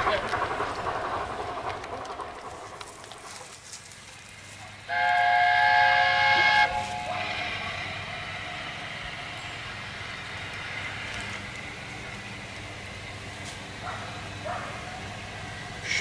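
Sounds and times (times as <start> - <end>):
steady steam hiss: 0.0 - 16.0
steam locomotive whistle: 4.8 - 9.0.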